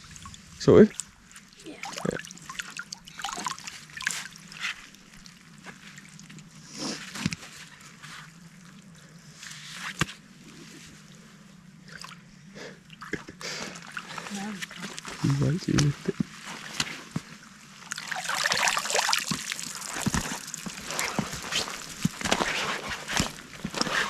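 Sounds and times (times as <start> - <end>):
water sloshing and splashing: 0.0 - 8.9, 12.8 - 24.0.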